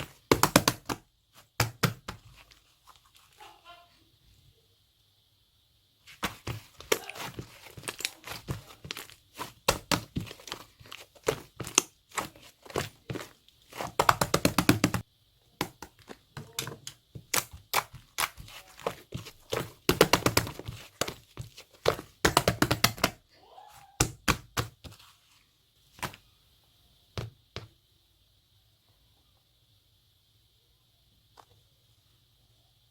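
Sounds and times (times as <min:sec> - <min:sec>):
slime squished by hand: 0:06.1 - 0:15.0.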